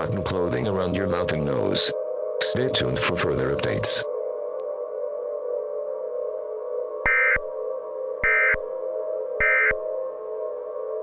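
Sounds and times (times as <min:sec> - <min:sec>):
ambient synthesizer drone: 0:00.0 - 0:11.0
digital data tones screeching: 0:07.1 - 0:07.4, 0:08.2 - 0:08.6, 0:09.4 - 0:09.8.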